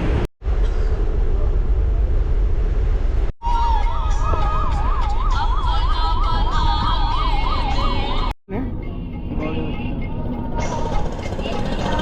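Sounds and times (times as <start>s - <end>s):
electronic siren warbling: 3.5s - 8.3s.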